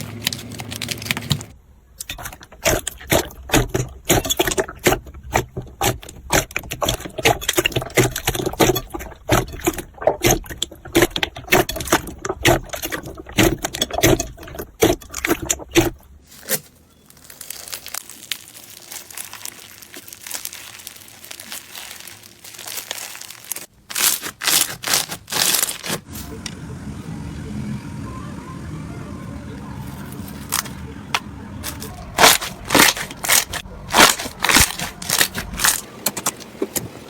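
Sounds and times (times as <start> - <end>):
slime squeezed by hand: 16.4 - 26.0.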